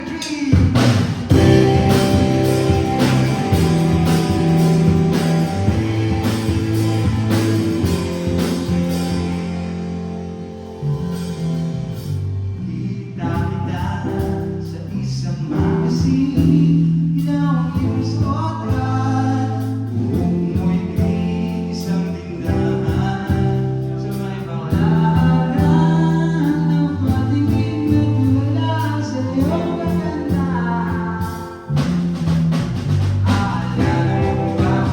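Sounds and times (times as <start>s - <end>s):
rock song with singing: 0.0s - 34.9s.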